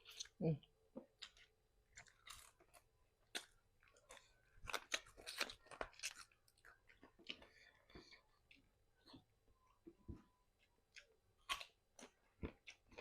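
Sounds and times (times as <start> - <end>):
crunchy chewing of fried chicken: 1.1 - 9.2, 10.8 - 13.0.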